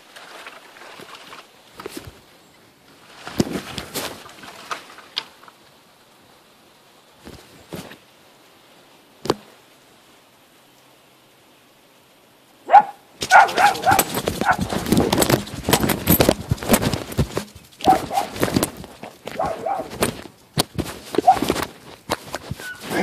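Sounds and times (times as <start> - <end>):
scuffling and clattering: 0.0 - 2.3, 2.9 - 5.5, 13.2 - 23.0
dogs barking: 12.7 - 14.9, 17.8 - 18.6, 19.2 - 20.1, 21.1 - 21.6.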